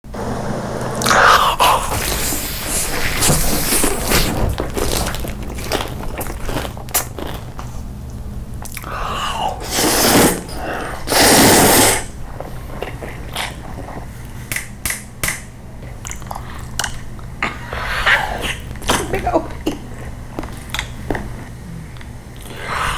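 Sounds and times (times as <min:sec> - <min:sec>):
crunchy biting and chewing: 0:01.0 - 0:15.1.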